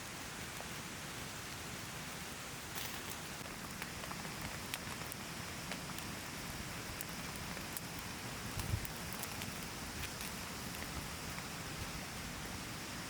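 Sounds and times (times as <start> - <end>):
rain hiss: 0.0 - 13.0
raindrops ticking on a surface: 2.8 - 12.2.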